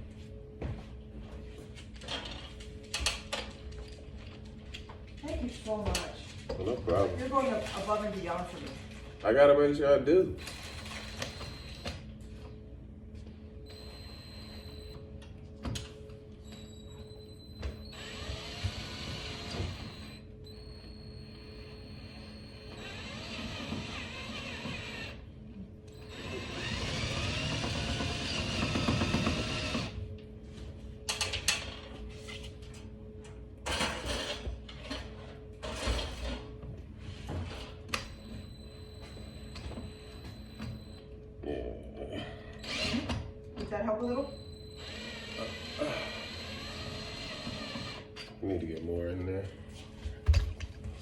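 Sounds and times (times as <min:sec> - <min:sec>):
power drill drilling into wall: 0:17.6 - 0:25.2, 0:26.0 - 0:30.0, 0:42.6 - 0:43.2, 0:44.8 - 0:48.1.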